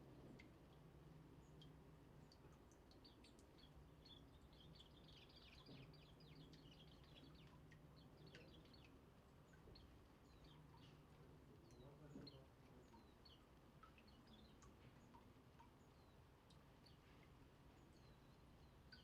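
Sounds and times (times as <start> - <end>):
small birds chirping: 0.2 - 19.0.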